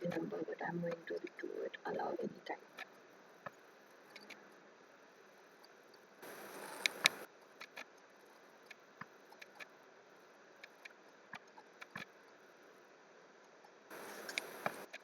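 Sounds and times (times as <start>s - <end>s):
computer mouse and keyboard clicks: 6.5s - 7.8s, 10.6s - 12.1s, 13.9s - 15.0s.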